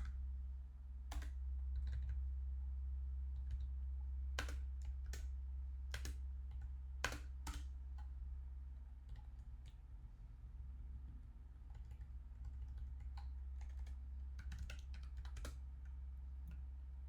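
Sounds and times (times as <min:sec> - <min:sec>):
steady low hum: 0:00.0 - 0:17.0
computer keyboard typing: 0:01.1 - 0:02.2, 0:11.7 - 0:15.9.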